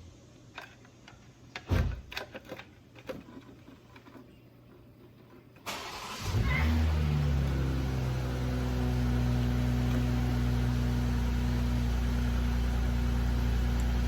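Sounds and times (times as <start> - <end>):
car engine idling: 5.7 - 14.0.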